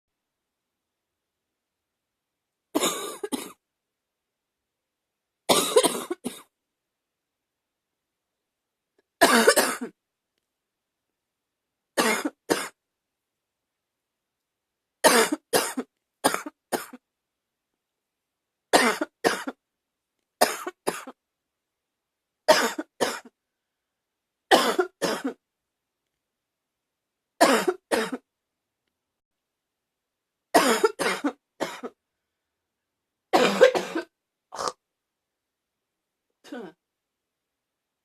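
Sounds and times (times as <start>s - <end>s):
person coughing: 2.8s - 3.6s, 5.5s - 6.5s, 9.2s - 10.0s, 12.0s - 12.8s, 15.1s - 17.0s, 18.8s - 19.6s, 20.4s - 21.2s, 22.5s - 23.3s, 24.5s - 25.4s, 27.4s - 28.2s, 30.6s - 32.0s, 33.4s - 34.8s, 36.4s - 36.8s.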